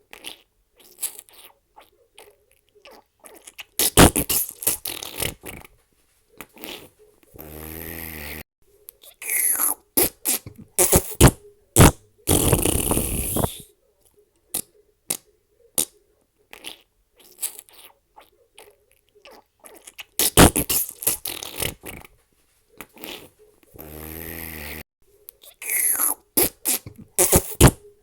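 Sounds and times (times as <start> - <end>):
fart sound effects: 3.8 - 5.7, 6.6 - 8.4, 9.2 - 13.6, 20.2 - 22.1, 23.0 - 24.8, 25.6 - 27.9.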